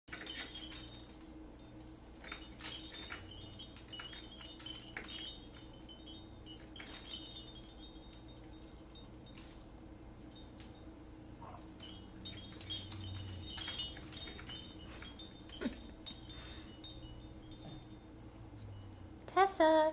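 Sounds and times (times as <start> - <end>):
small metal pieces jingling: 2.2 - 9.7, 11.6 - 18.0.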